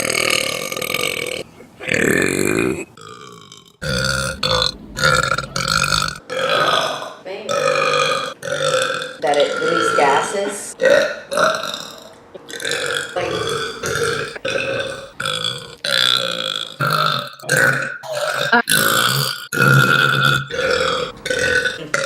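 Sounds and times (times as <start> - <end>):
girl burping: 18.1 - 22.0.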